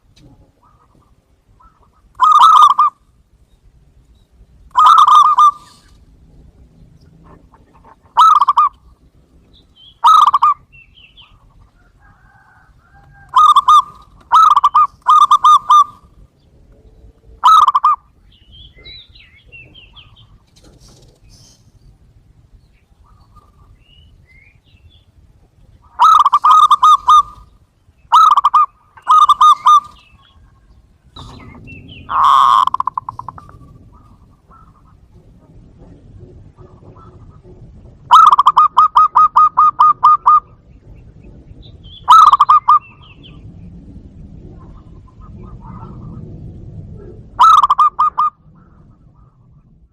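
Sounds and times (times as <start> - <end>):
dove cooing: 0.0 - 3.1, 4.6 - 9.2, 9.8 - 21.7, 25.8 - 43.5, 44.2 - 49.9.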